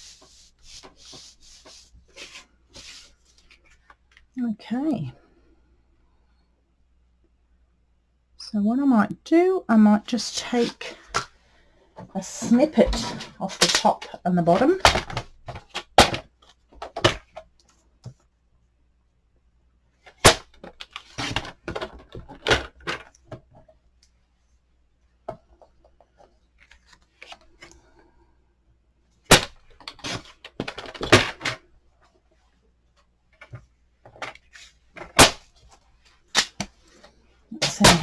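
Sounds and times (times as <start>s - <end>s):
card rustling and scraping: 0.0s - 4.1s, 10.3s - 11.4s, 12.2s - 16.2s, 29.4s - 31.6s, 33.4s - 38.0s.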